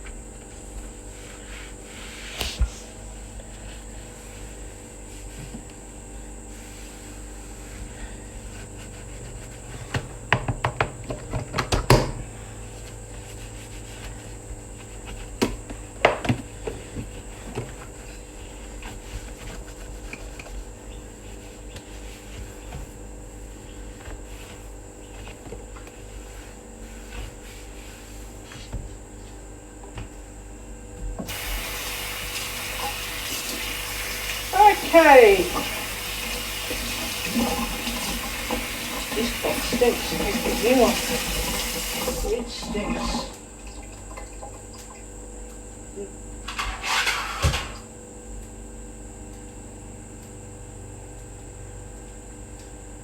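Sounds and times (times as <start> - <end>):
low room hum: 0.0 - 53.0
kitchen knocks and clatter: 9.9 - 12.2, 46.5 - 47.8
tap water running into sink: 31.3 - 45.1.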